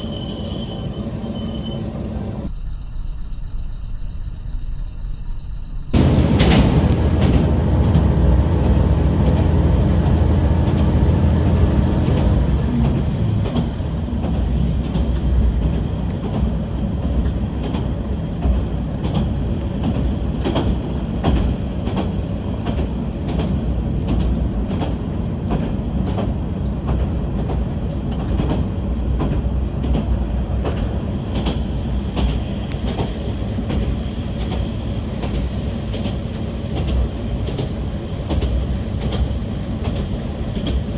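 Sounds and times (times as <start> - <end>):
diesel railcar engine drone: 0.0 - 2.5, 6.0 - 40.9
railcar rumble: 0.0 - 2.6, 6.0 - 40.9
wheels clicking over rail joints: 6.0 - 40.9.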